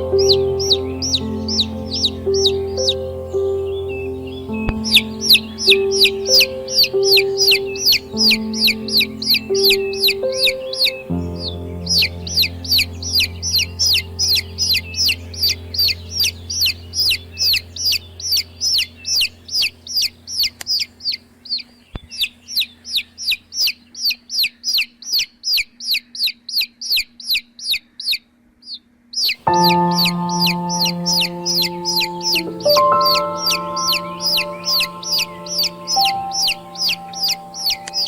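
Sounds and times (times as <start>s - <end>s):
soft music: 0.0s - 19.7s, 29.4s - 38.0s
baby chicks peeping: 0.0s - 38.0s.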